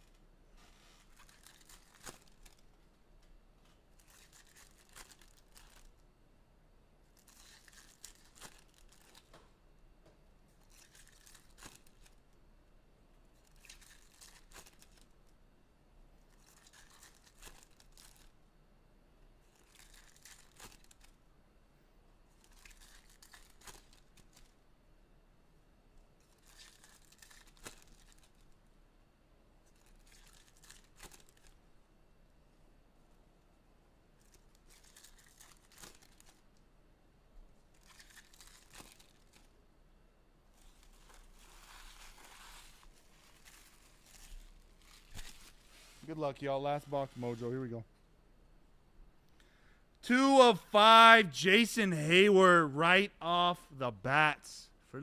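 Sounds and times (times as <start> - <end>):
wrapper tearing and crinkling: 1.1 - 2.6, 37.8 - 39.4.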